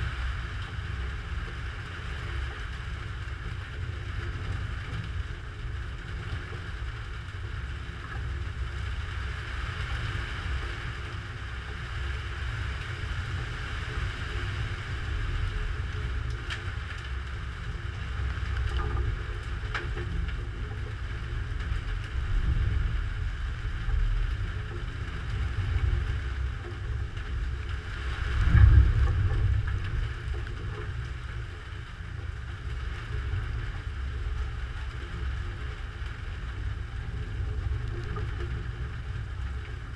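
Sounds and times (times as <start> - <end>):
low storm rumble: 0.0 - 39.9
thunder rumble: 14.3 - 39.9.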